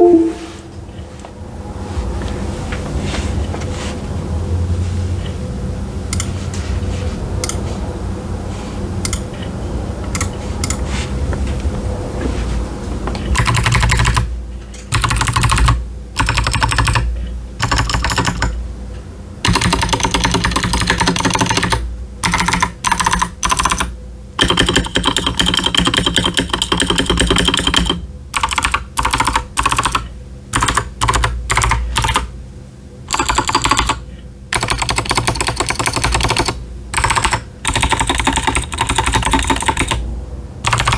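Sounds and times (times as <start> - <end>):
mechanical keyboard typing: 0.0 - 0.4, 10.1 - 10.8, 13.4 - 14.3, 14.9 - 18.6, 19.4 - 32.3, 33.1 - 40.0, 40.6 - 40.9.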